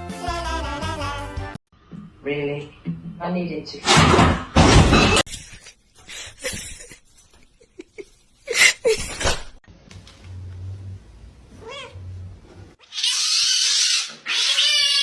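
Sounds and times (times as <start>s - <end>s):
cat meowing: 11.6s - 12.0s, 12.9s - 15.0s
cat yowling: 11.6s - 12.0s, 12.8s - 15.0s.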